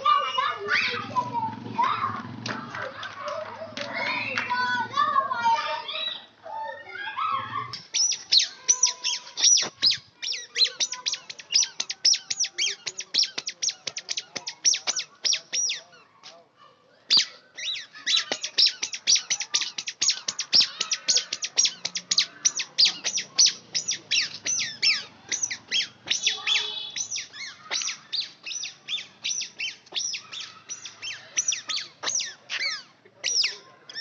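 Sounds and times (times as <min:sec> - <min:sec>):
small bird chirping: 0:07.8 - 0:16.0, 0:17.1 - 0:34.0.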